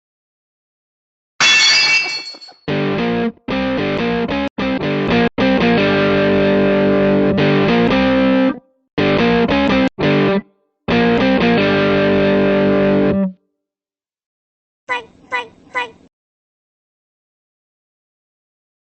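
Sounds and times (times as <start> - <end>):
distorted electric guitar music: 2.8 - 13.4.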